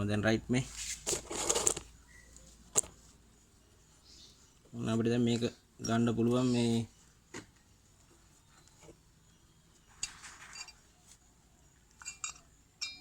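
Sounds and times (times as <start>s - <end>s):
metallic clicks and clinks: 11.9s - 13.0s.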